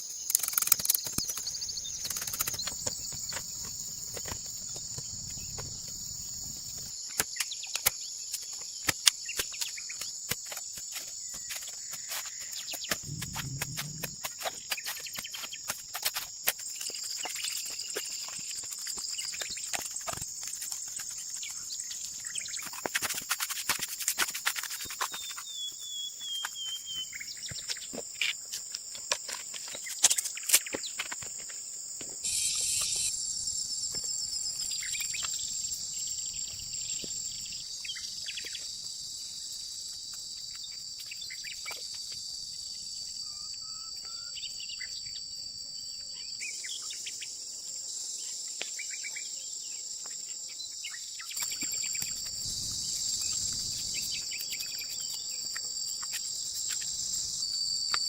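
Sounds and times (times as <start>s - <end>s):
insects chirping: 0.0s - 58.0s.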